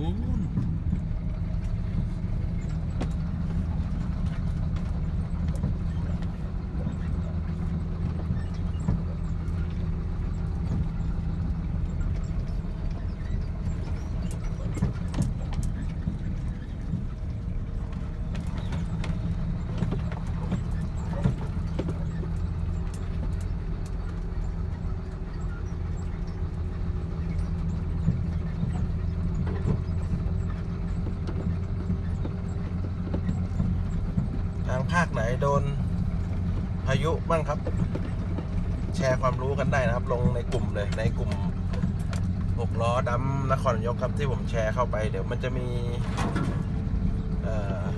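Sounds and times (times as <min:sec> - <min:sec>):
truck diesel engine running: 0:00.0 - 0:47.9
short knocks and clunks: 0:11.7 - 0:24.6, 0:46.0 - 0:47.9.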